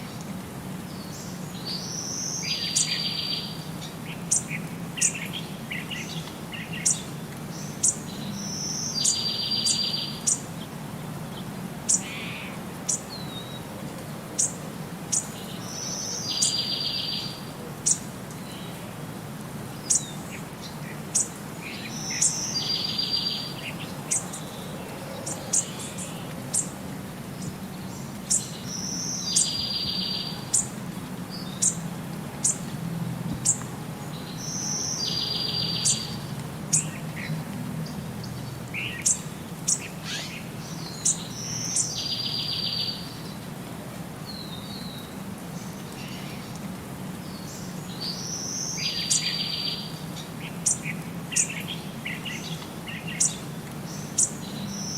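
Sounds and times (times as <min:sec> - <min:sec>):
birds chirping: 0:00.8 - 0:13.7, 0:19.7 - 0:32.7, 0:33.3 - 0:43.5.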